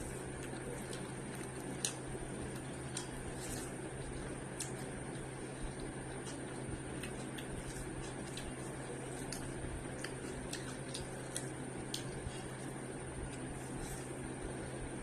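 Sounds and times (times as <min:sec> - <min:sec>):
low electrical hum: 0:00.0 - 0:15.0
chewing mouth clicks and squishes: 0:00.1 - 0:14.2.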